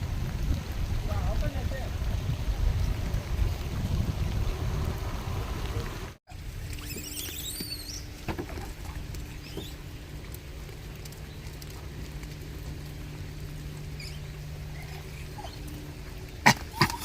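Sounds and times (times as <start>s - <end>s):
rain pattering: 0.0s - 6.8s, 7.4s - 17.0s
short high squeals: 6.6s - 8.2s.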